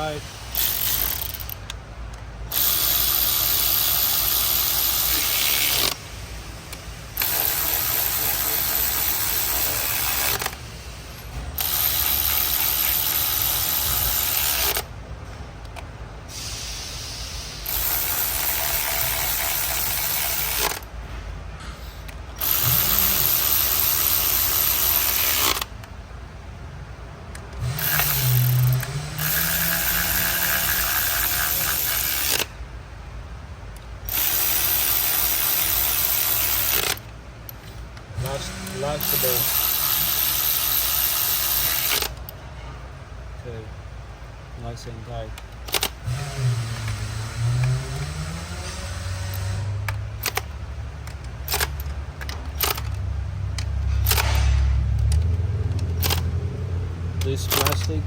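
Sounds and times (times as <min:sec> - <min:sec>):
power ratchet running: 0:00.0 - 0:01.7, 0:02.5 - 0:15.0, 0:16.3 - 0:20.9, 0:22.3 - 0:25.8, 0:27.4 - 0:32.6, 0:34.0 - 0:37.1, 0:38.1 - 0:42.4, 0:45.6 - 0:58.0.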